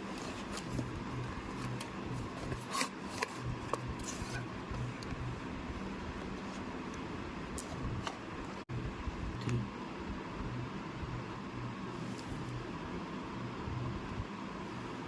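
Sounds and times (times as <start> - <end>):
packaging rubbing scrapes: 0.0 - 4.5
low background hum: 0.0 - 15.0.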